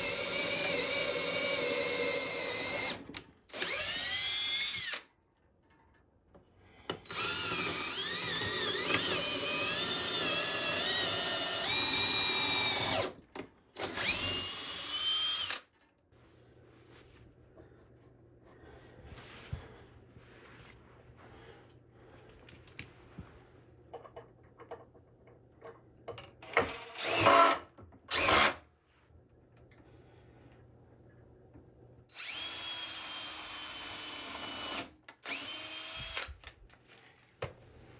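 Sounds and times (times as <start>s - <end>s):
electric drill running in bursts: 0.0s - 3.0s, 3.6s - 5.0s, 7.1s - 13.1s, 26.5s - 28.5s, 32.2s - 36.3s.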